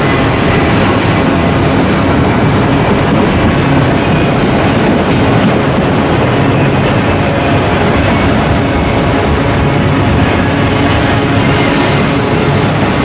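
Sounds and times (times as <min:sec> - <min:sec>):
wheel-on-rail noise: 0:00.0 - 0:13.0.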